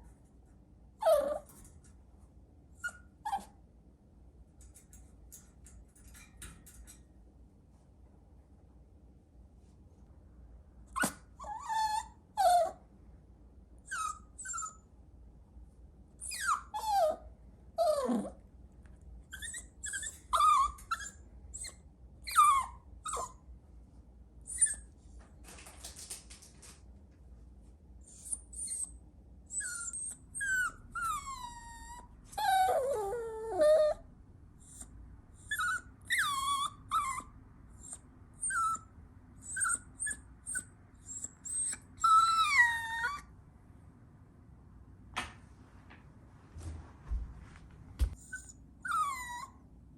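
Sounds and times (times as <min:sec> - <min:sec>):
puppy whimpering and yelping: 0:01.0 - 0:01.6, 0:02.8 - 0:03.6, 0:10.9 - 0:12.8, 0:13.8 - 0:14.9, 0:16.2 - 0:18.4, 0:19.3 - 0:23.4, 0:24.5 - 0:24.9, 0:28.1 - 0:34.0, 0:34.6 - 0:43.3, 0:48.0 - 0:49.7.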